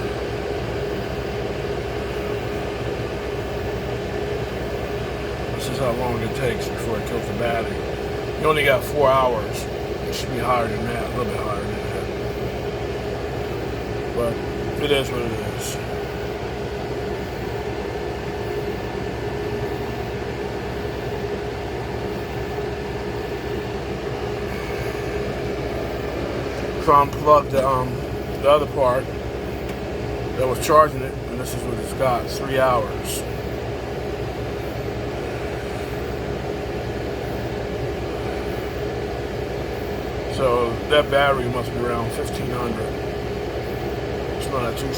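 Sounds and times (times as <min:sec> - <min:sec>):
window air conditioner running: 0:00.0 - 0:44.9.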